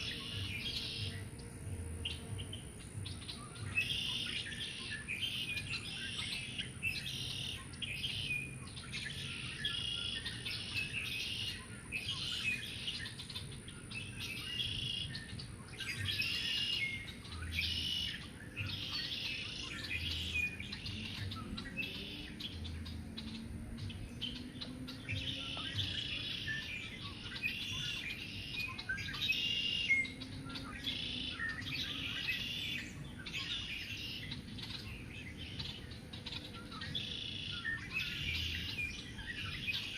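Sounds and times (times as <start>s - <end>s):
songbirds singing and chirping: 0.0s - 39.9s.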